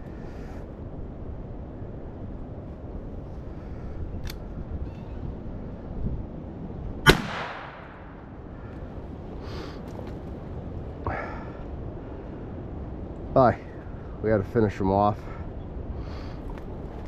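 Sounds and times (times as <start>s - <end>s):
wind rumbling on microphone: 0.0s - 17.0s
sharp click: 4.2s - 4.4s
rifle shot: 7.1s - 8.3s.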